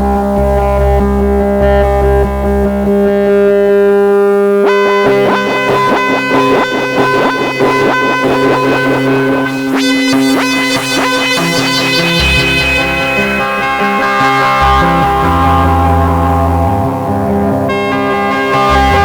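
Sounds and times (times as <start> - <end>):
synthesizer chord: 4.6 - 19.0
upward synth pitch sweeps: 5.0 - 16.8.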